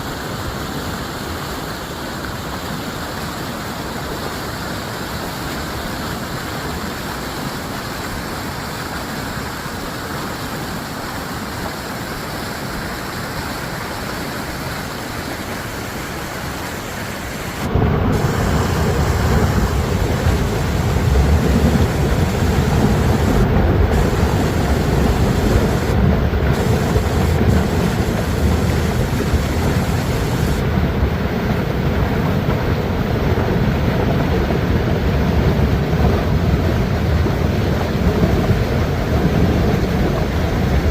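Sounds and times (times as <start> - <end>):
floodwater roaring: 0.0 - 40.9
deep rumble: 17.7 - 32.2.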